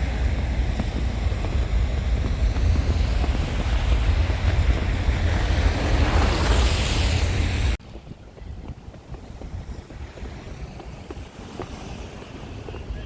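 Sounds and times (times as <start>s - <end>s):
heavy low rumble: 0.0s - 7.8s
wind buffeting microphone: 0.0s - 13.0s.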